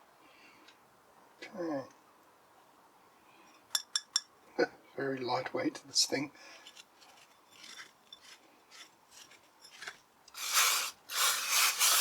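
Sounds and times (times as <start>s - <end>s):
aerosol spray hissing: 10.4s - 12.0s.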